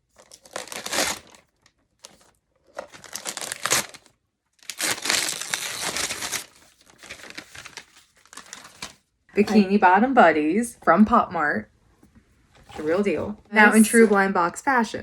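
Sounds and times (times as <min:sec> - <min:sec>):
wrapping paper tearing and crumpling: 0:00.0 - 0:09.0.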